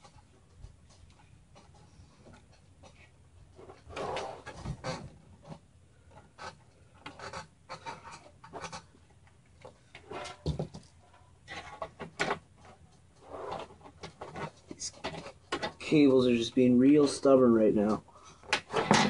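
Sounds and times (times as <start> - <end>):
cables rubbing and scraping: 0.0 - 19.0.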